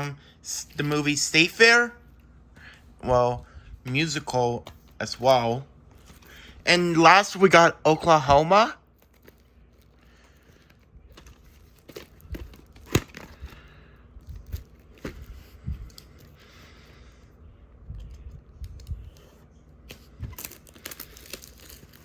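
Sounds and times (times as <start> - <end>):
packaging crinkling and rustling: 8.0 - 16.7, 17.9 - 22.0.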